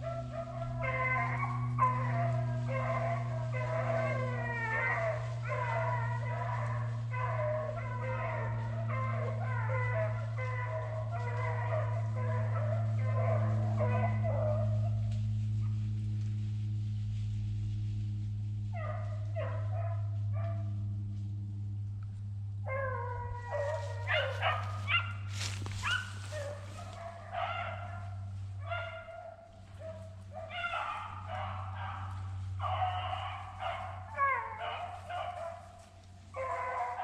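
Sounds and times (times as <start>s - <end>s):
voices: 0.0s - 15.2s, 22.8s - 37.0s
beagles baying: 0.0s - 16.0s, 18.6s - 21.0s, 21.7s - 37.0s
steady low hum: 0.0s - 37.0s.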